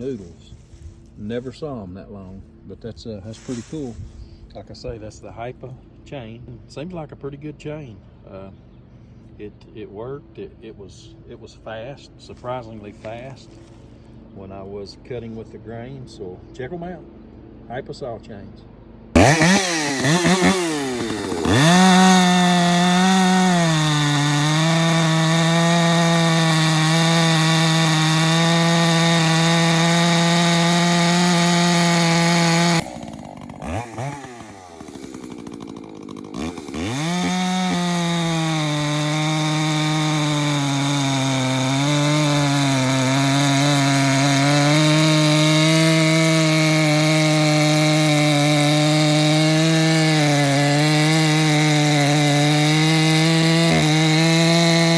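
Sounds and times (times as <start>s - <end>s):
chainsaw cutting wood: 19.1s - 54.9s.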